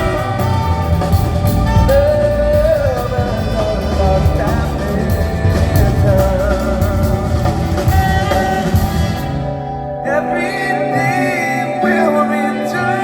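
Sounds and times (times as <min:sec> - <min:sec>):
drums and cymbals: 0:00.0 - 0:09.8
live band playing slow song: 0:00.0 - 0:13.0
person singing: 0:00.0 - 0:13.0.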